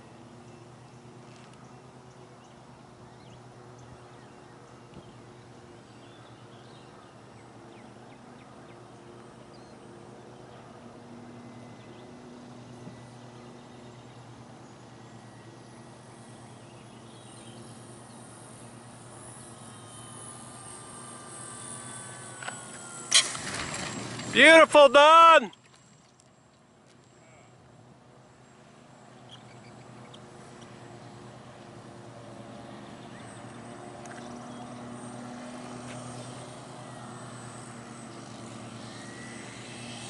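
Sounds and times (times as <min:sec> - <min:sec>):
distant model airplane drone: 0:00.0 - 0:40.0
faint bird chirps: 0:29.2 - 0:30.3.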